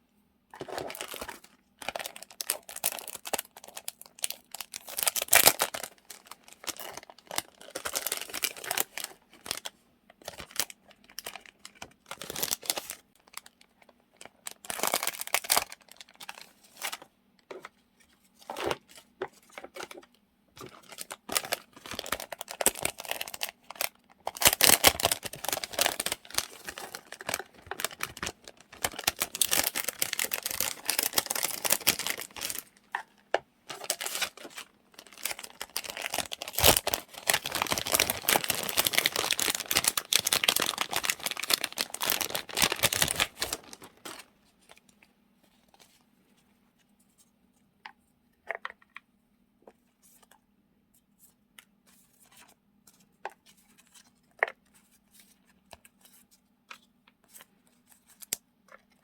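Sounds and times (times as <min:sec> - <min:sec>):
packaging crinkling and rustling: 0:00.5 - 0:46.0.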